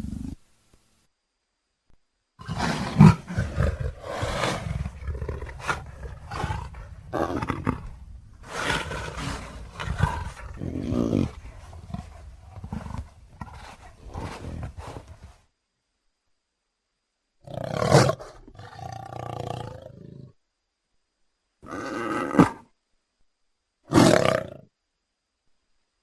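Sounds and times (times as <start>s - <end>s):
leopard roaring and growling: 2.4s - 15.4s, 17.4s - 20.3s, 21.6s - 22.6s, 23.9s - 24.6s.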